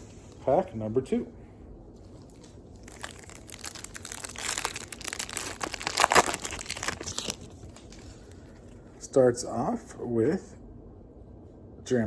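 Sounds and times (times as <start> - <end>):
card pack wrapper crinkling: 2.2 - 8.1.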